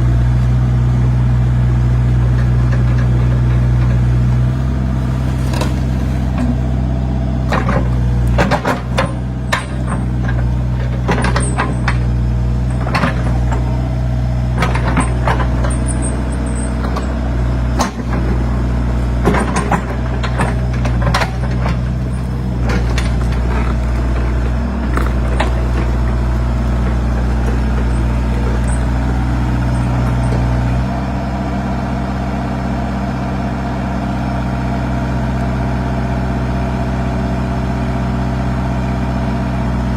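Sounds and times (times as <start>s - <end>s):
excavator diesel engine running: 0.0s - 39.9s
excavator bucket clanks: 2.3s - 31.0s.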